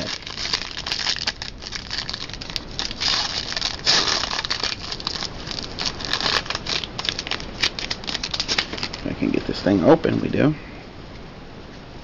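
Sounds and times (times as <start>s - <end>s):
plastic wrapper crinkling: 0.0s - 9.8s.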